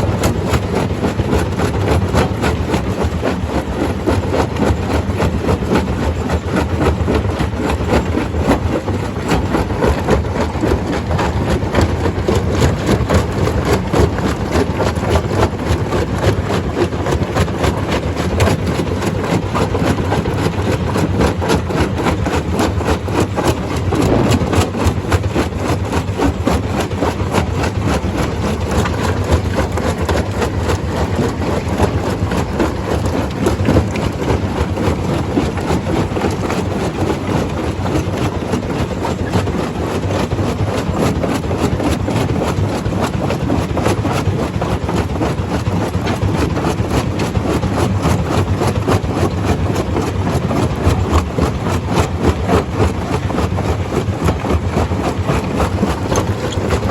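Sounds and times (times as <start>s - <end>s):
rock being crushed: 23.4s - 25.5s
heavy engine drone: 23.4s - 25.7s.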